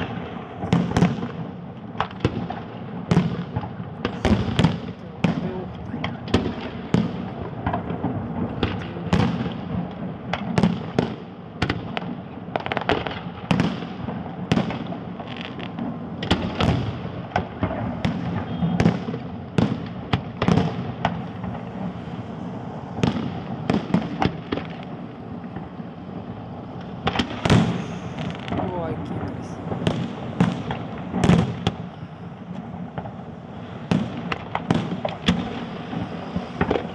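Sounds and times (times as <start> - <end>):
steady low rumble: 3.8 - 10.4
firework shells bursting: 23.0 - 36.9.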